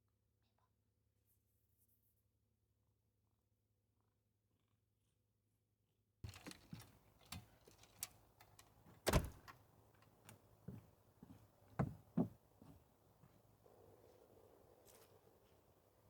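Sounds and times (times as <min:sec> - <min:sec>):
light clicks and knocks: 0:06.3 - 0:10.4.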